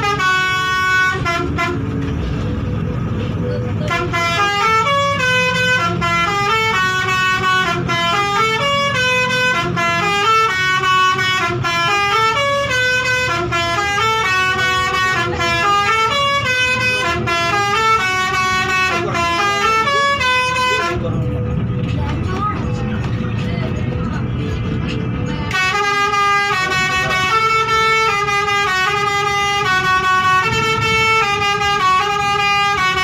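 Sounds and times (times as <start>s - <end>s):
musical bus horn tune: 0.0s - 33.0s
low rumble: 1.2s - 4.2s, 20.2s - 26.8s.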